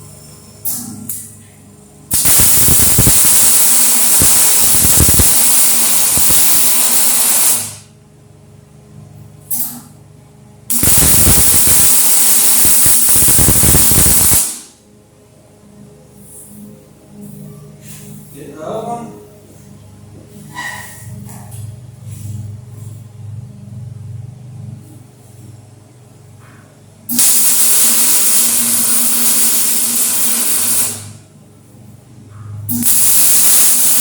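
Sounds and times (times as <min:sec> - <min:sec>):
arc welding sizzling hiss: 0:02.1 - 0:07.9, 0:10.7 - 0:14.7, 0:27.1 - 0:31.2, 0:32.7 - 0:34.0.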